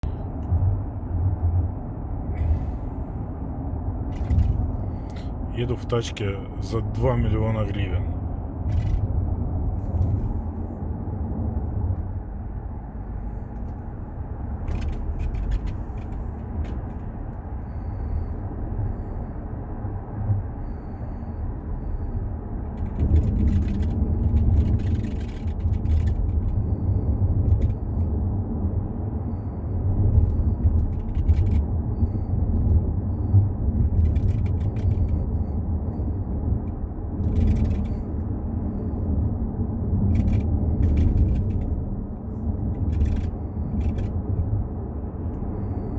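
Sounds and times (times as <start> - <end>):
road rumble in car cabin: 0.0 - 45.9.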